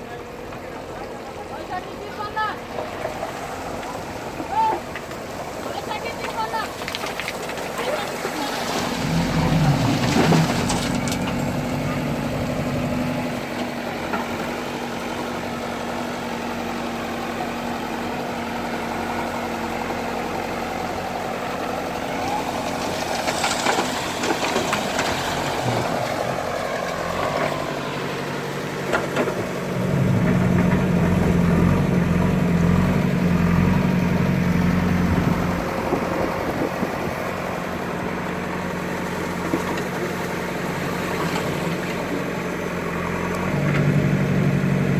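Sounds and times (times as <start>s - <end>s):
diesel engine running and revving: 0.0s - 44.9s
short clatters: 2.7s - 11.7s, 22.5s - 27.6s.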